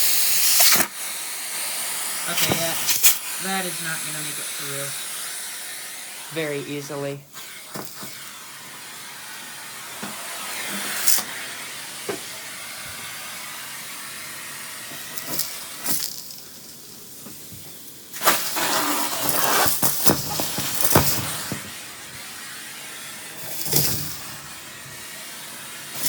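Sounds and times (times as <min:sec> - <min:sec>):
vacuum hose sucking air: 0:00.0 - 0:26.0
debris rattling through hose: 0:15.0 - 0:22.0, 0:23.4 - 0:24.6.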